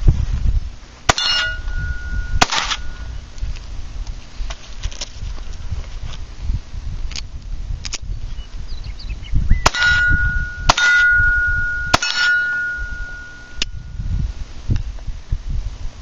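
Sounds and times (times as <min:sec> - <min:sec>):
steel target ringing: 0:01.1 - 0:03.1, 0:09.6 - 0:14.1
pistol shots: 0:02.4 - 0:02.9, 0:09.6 - 0:11.2, 0:11.9 - 0:12.6.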